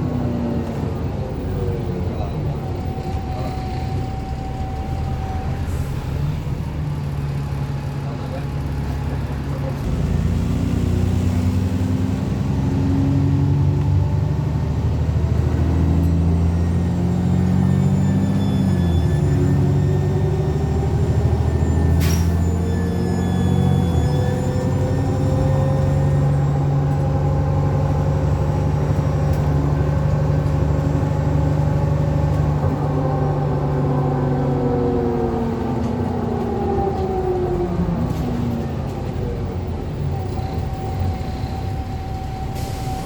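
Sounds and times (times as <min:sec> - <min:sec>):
bus diesel engine: 0:00.0 - 0:43.0.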